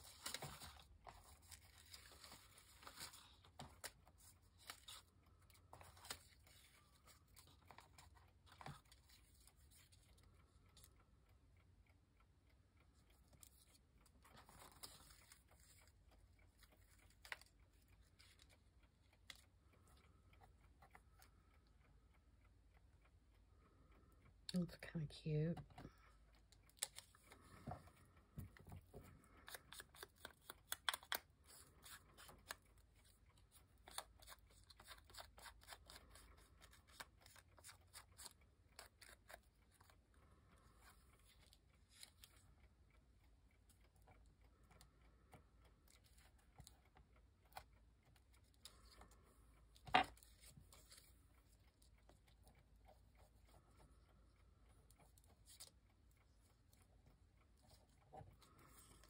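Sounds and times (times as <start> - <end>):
paper rustling: 0.0 - 9.9, 13.4 - 15.9
scissors snipping paper: 29.4 - 32.6, 33.5 - 39.9.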